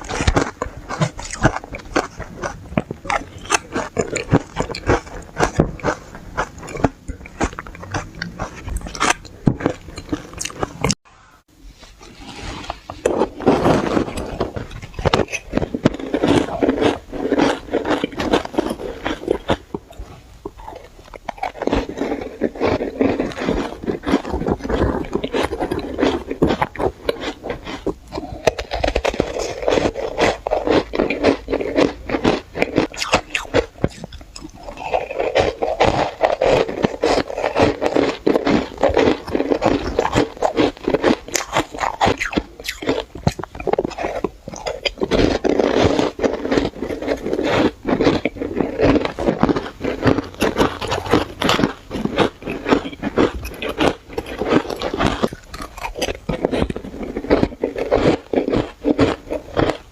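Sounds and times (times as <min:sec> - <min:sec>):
shaved ice crunching: 0:20.7 - 0:59.8.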